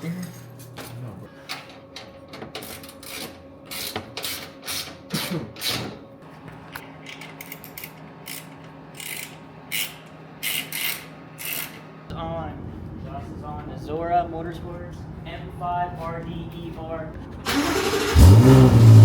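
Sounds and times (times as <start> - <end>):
ratchet tool clicking: 7.4 - 11.8.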